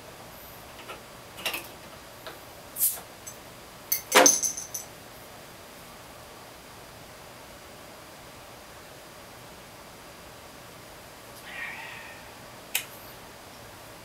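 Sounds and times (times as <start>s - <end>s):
beer opening hiss: 2.7s - 3.1s
metallic clatter with ringing: 3.9s - 4.9s.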